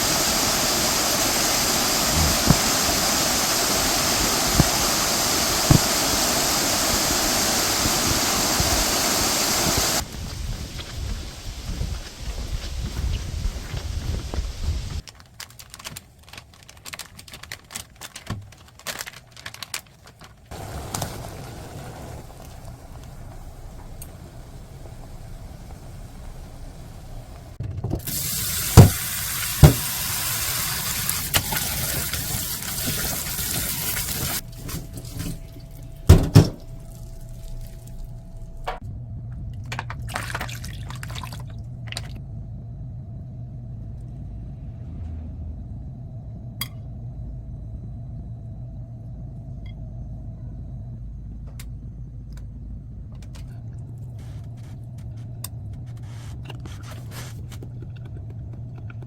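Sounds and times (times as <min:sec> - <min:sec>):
tap running into sink: 0:28.0 - 0:30.0.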